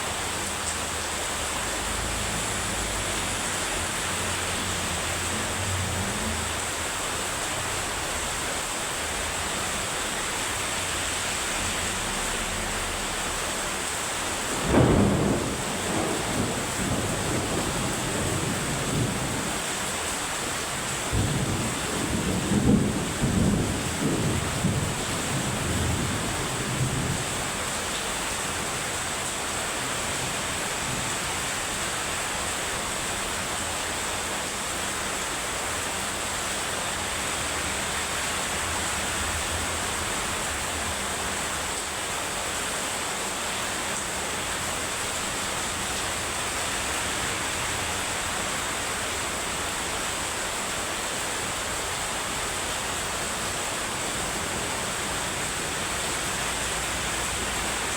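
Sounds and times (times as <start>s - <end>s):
heavy rain falling: 0.0s - 57.9s
thunder rumble: 14.3s - 19.7s, 20.9s - 27.6s.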